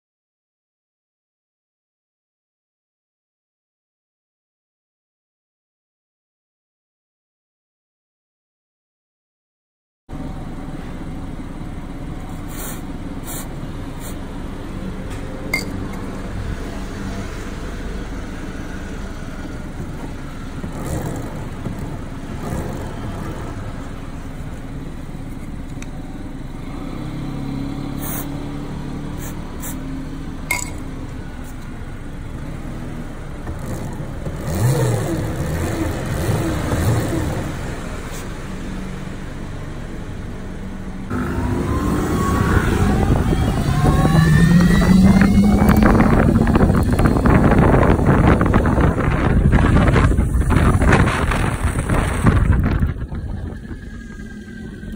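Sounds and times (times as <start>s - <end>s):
road noise: 10.1s - 54.9s
electric scooter whirring: 10.2s - 54.9s
vehicle passing: 14.0s - 24.6s, 40.8s - 54.9s.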